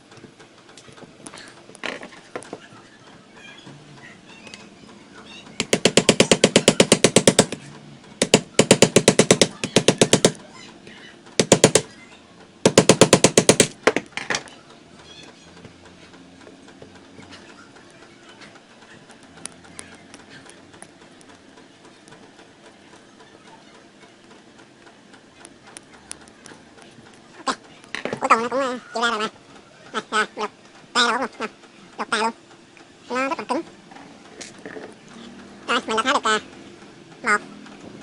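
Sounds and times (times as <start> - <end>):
power screwdriver hammering: 5.6 - 7.6, 8.2 - 10.4, 11.4 - 11.9, 12.7 - 14.1.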